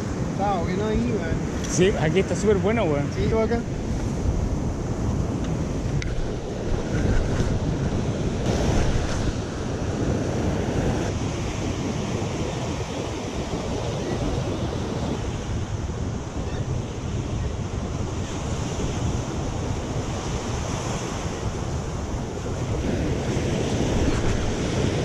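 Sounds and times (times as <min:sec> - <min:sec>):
surf washing against rocks: 0:00.0 - 0:16.4
wind buffeting microphone: 0:00.0 - 0:25.0.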